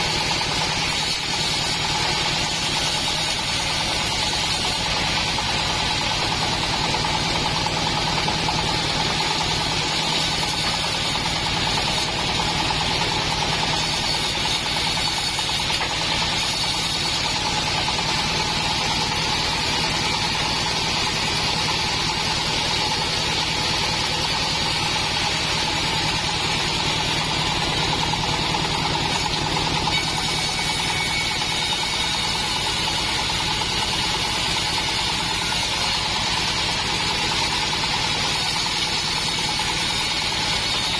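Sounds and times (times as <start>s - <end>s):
bandsaw mill humming: 0.0s - 40.9s.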